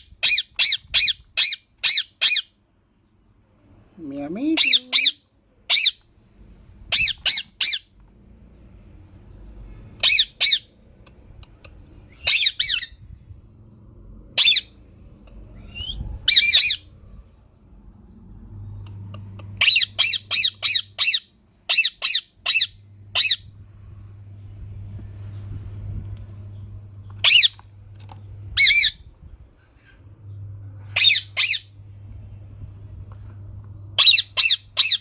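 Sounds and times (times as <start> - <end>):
parrot squawking: 0.2 - 2.5, 4.6 - 6.0, 6.9 - 7.9, 10.0 - 10.7, 12.1 - 13.0, 14.4 - 14.8, 15.6 - 16.9, 19.6 - 23.4, 27.2 - 27.6, 28.6 - 29.0, 30.9 - 31.7, 34.0 - 35.0.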